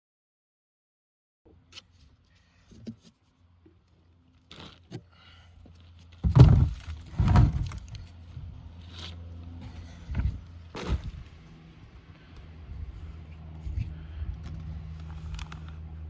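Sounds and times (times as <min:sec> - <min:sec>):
heavy thuds: 0:06.2 - 0:07.9.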